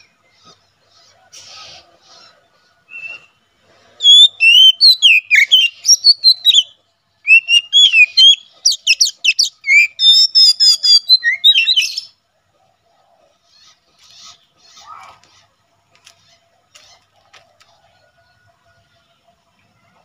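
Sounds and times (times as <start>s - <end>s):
bird singing whistles and trills: 2.9s - 3.4s, 4.0s - 12.2s.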